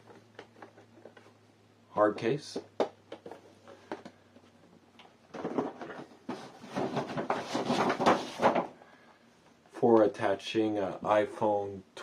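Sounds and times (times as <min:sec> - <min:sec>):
rustling and scraping: 0:00.0 - 0:01.4, 0:03.1 - 0:09.1.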